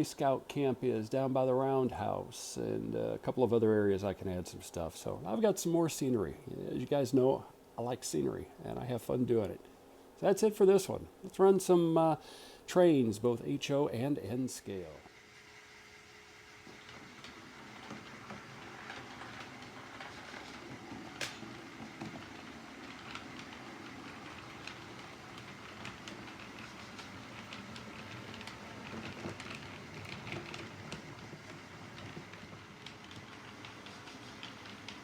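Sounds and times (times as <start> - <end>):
small clicks of train wheels: 16.6 - 35.0.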